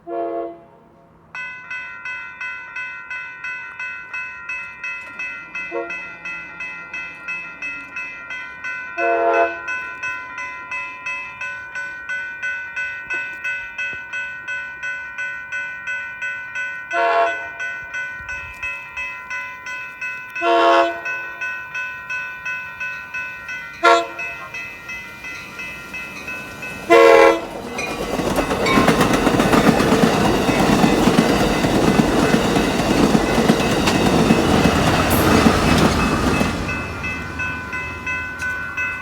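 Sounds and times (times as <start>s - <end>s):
train horn blasts: 0.0s - 1.2s, 5.7s - 6.2s, 9.0s - 9.7s, 16.9s - 17.6s, 20.4s - 21.3s, 23.8s - 24.7s, 26.9s - 27.6s
railroad bell ringing: 1.2s - 39.0s.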